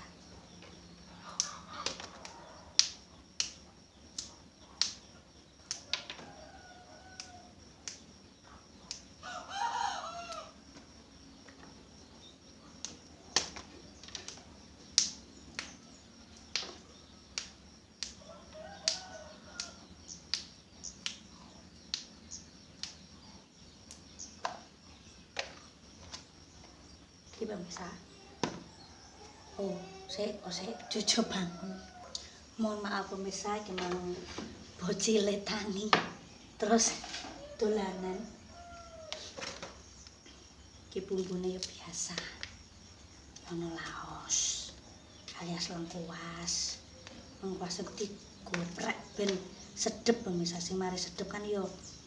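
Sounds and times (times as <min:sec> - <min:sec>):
rooster crowing: 0:09.2 - 0:10.6, 0:18.2 - 0:19.9, 0:37.4 - 0:39.3.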